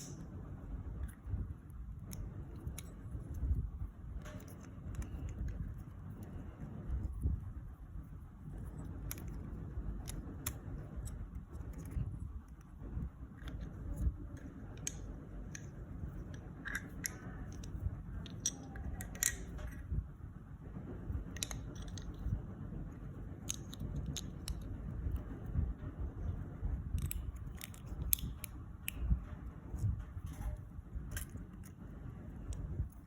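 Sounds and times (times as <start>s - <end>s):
low handling rumble: 0.0s - 33.0s
plastic bricks clicking together: 16.3s - 19.8s.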